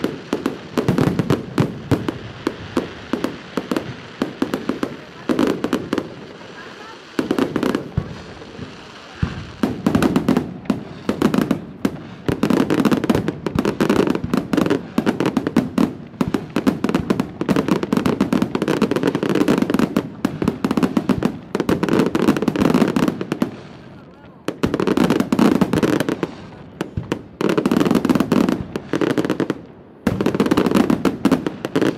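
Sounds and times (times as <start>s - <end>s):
fireworks bangs and crackles: 0.0s - 31.9s.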